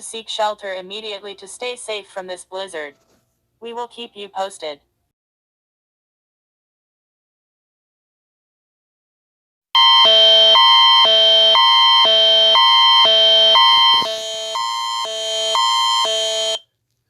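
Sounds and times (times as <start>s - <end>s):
alternating harsh alert chords: 9.8s - 16.6s.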